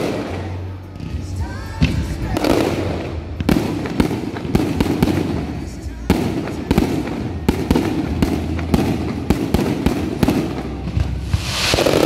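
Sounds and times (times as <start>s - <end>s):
fireworks bursting: 0.0s - 12.0s
crackling hiss: 2.4s - 12.0s.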